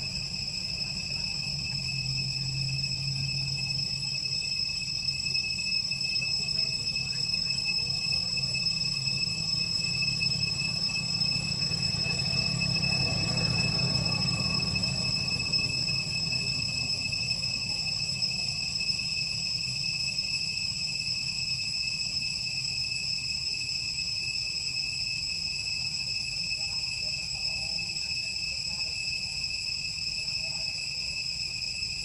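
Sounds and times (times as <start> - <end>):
high-pitched insect drone: 0.0 - 32.0.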